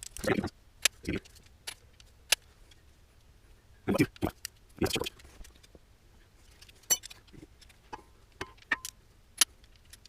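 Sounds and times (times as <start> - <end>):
metal tools clinking: 6.5 - 7.8.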